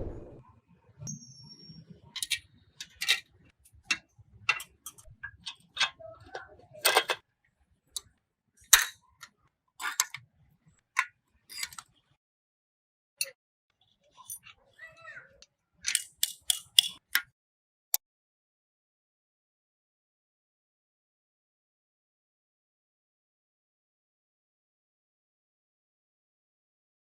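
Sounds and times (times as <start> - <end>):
sharp clicks and metallic taps: 15.4 - 17.3.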